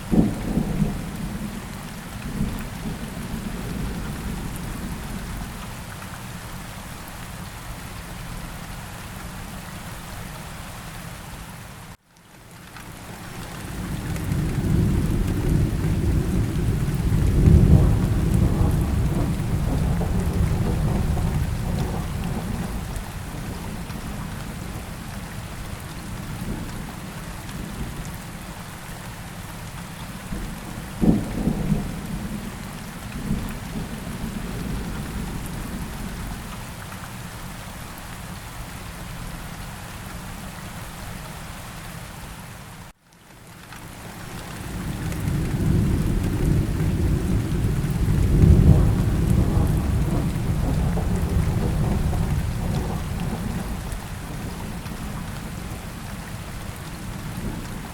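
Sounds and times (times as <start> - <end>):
steady rain falling: 0.0 - 57.9
rolling thunder: 13.8 - 24.9, 30.3 - 36.4, 44.7 - 55.9
sharp thunder crack: 45.5 - 53.8.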